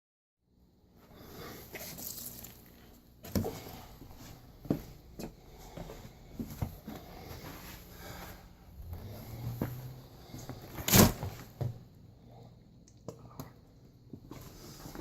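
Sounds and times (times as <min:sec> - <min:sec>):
rustling and handling: 0:01.4 - 0:05.3.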